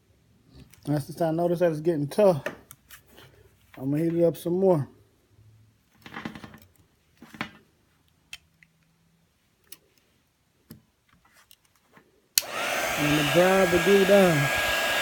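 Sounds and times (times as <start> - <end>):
heat gun blowing hiss: 12.4 - 15.0
heat gun click: 12.4 - 15.0.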